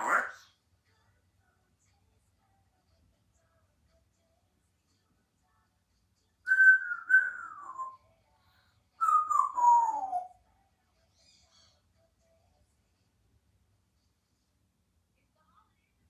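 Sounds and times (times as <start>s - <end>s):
parrot whistling: 6.5s - 8.0s, 9.0s - 10.3s.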